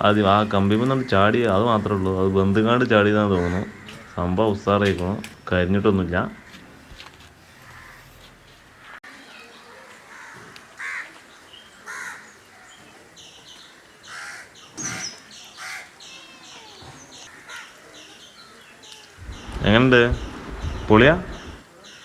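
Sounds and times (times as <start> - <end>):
small birds chirping: 0.0 - 22.0
crows cawing: 0.6 - 4.7, 6.0 - 9.2, 9.9 - 11.2, 11.8 - 12.9, 14.0 - 16.0, 17.3 - 18.1.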